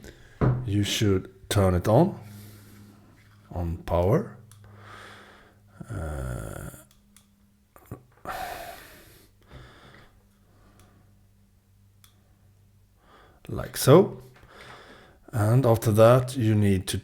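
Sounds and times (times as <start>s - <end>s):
faint steady low hum: 0.0s - 17.0s
person breathing: 2.2s - 3.3s, 4.6s - 6.9s, 8.2s - 11.2s, 13.0s - 13.4s, 14.2s - 15.3s
short hum-like vocal sound: 4.8s - 7.0s, 7.7s - 9.4s.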